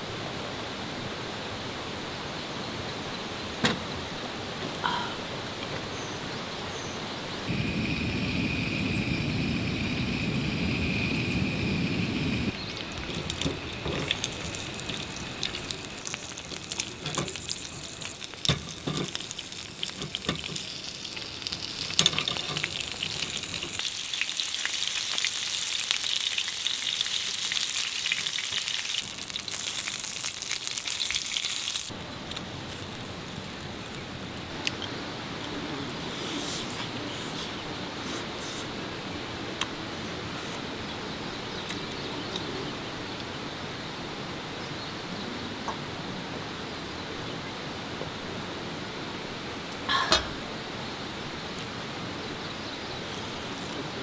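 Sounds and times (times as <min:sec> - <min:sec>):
food sizzling on a griddle: 0:07.5 - 0:34.5.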